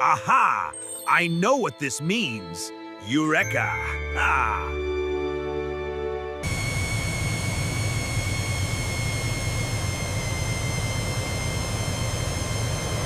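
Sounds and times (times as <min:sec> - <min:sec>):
music: 0:00.0 - 0:06.5
jet engine rumble and whine: 0:06.4 - 0:13.0.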